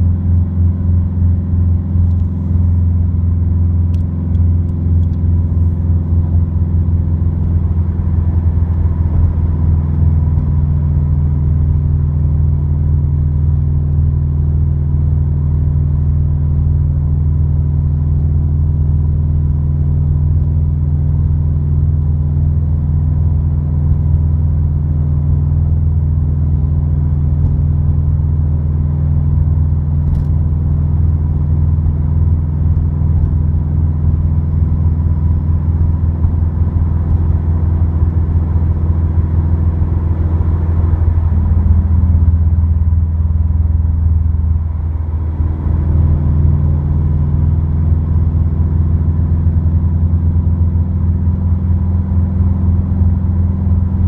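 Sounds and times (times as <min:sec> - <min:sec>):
car engine drone in cabin: 0:00.0 - 0:54.0.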